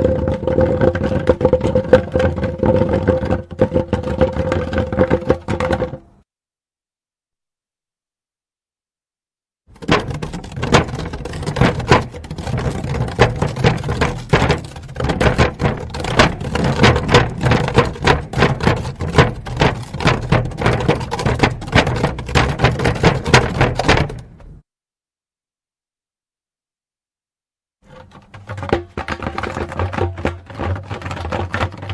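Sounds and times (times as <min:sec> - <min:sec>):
wooden barrel scraping on pavement: 0:00.0 - 0:06.2, 0:09.8 - 0:24.6, 0:27.9 - 0:31.9
sharp knocks: 0:09.8 - 0:24.5.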